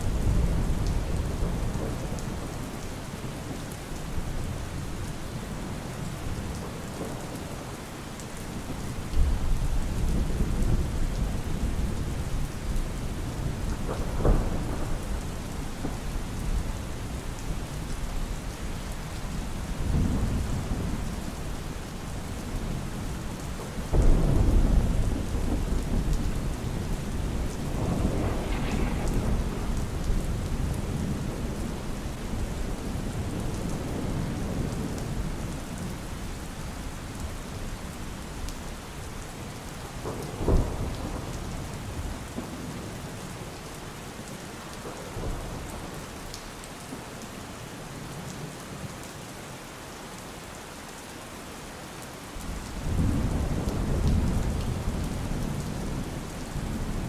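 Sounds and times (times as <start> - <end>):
steady rain: 0.0 - 57.0
rolling thunder: 9.2 - 17.2, 22.5 - 35.9, 39.8 - 42.6, 52.4 - 57.0
sharp thunderclap: 23.9 - 32.5.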